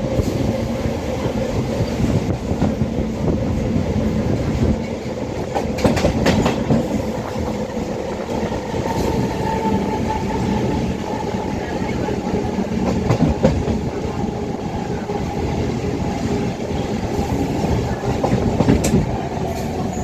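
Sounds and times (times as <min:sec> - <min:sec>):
train rumbling on track: 0:00.0 - 0:20.0
wheels clicking over rail joints: 0:04.7 - 0:09.3.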